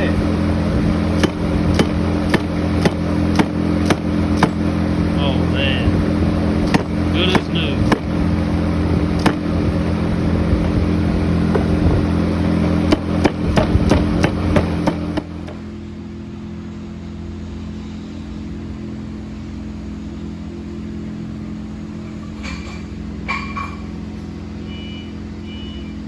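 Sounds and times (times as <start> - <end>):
engine running: 0.0 - 26.0
sharp knocks: 1.2 - 4.8, 6.6 - 8.3, 9.1 - 9.9, 10.5 - 12.1, 12.7 - 15.6.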